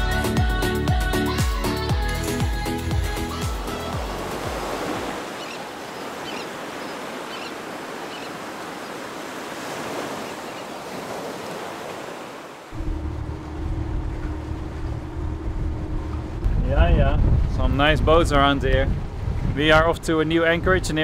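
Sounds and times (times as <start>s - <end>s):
boat engine humming: 0.0s - 17.7s
rushing sea water: 0.0s - 21.0s
wind buffeting microphone: 12.7s - 21.0s.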